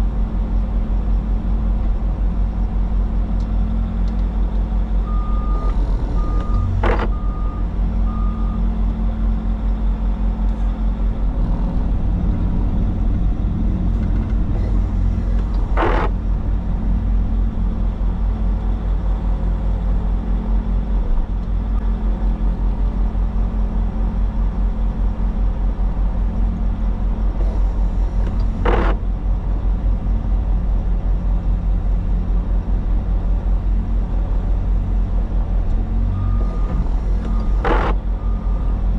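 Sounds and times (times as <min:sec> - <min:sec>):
diesel engine running: 0:00.0 - 0:38.9
backup alarm beeping: 0:05.1 - 0:08.6.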